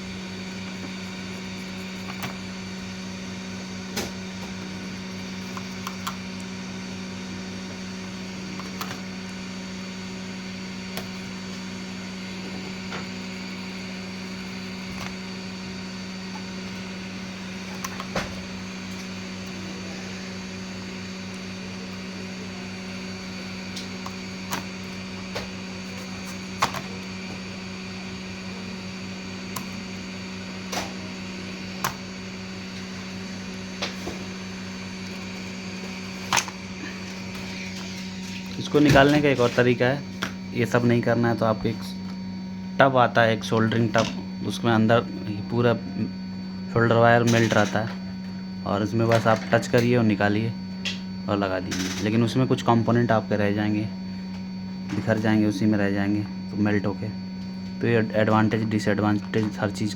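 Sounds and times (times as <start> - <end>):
hot air blower hissing: 0.0 - 59.9.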